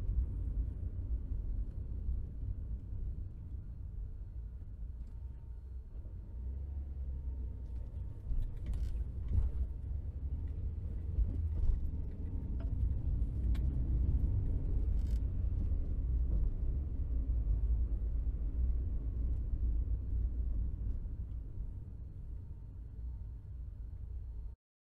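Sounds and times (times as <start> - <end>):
car interior rumble: 0.0 - 24.5
brief clicks and creaks: 7.7 - 9.6, 14.8 - 15.3.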